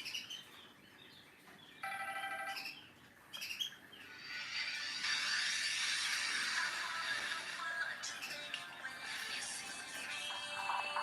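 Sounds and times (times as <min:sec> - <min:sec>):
mobile phone ringtone: 0:01.8 - 0:02.8.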